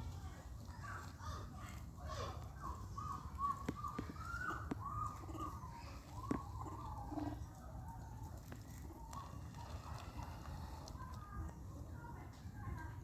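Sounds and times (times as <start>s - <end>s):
young monkeys calling: 2.1s - 11.2s.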